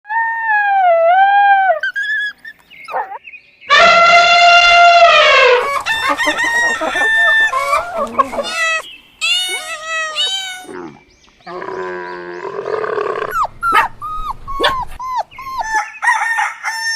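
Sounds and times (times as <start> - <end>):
rooster crowing: 3.7 - 8.8, 15.5 - 16.9.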